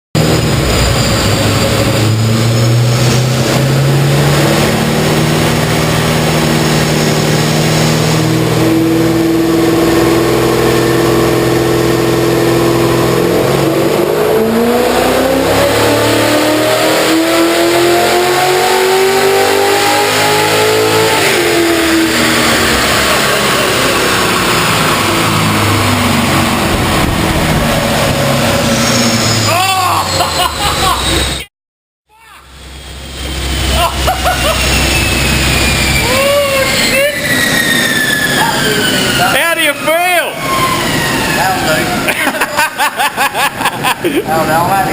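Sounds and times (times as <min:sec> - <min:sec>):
car engine revving under load: 0:00.2 - 0:31.4.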